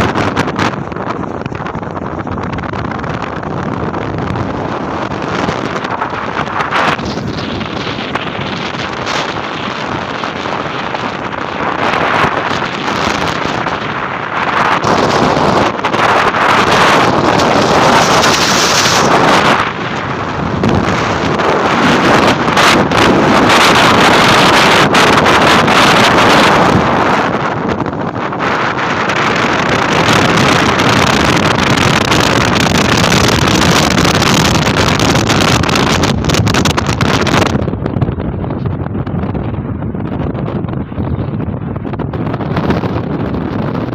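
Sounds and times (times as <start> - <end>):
storm wind buffeting microphone: 0.0 - 43.9
surf rushing: 2.3 - 37.9.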